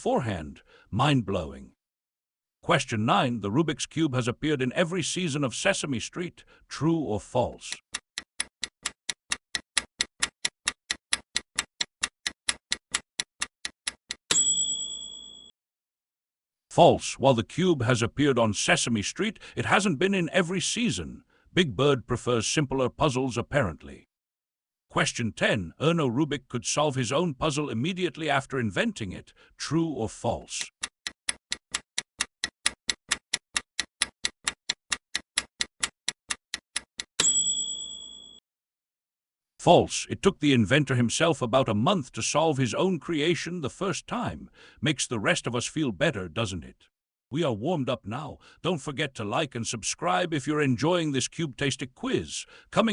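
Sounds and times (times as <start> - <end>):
countdown timer ticking: 7.7 - 14.5, 30.6 - 37.4.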